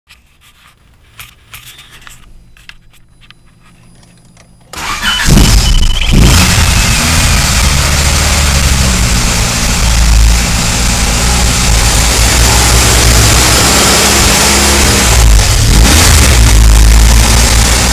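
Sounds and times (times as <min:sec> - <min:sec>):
vehicle engine starting and running: 0:04.3 - 0:17.9.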